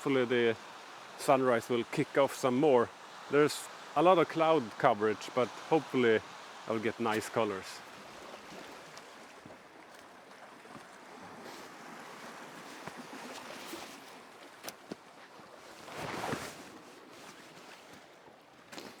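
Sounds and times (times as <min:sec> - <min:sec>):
waves washing against rocky shore: 0:00.0 - 0:08.8
wind: 0:00.0 - 0:19.0.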